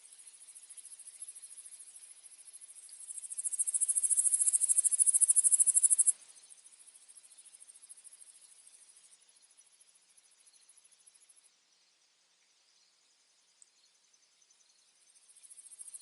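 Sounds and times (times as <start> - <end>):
faint insects trilling: 0.0 - 16.0
high-pitched insect trilling: 2.8 - 6.2.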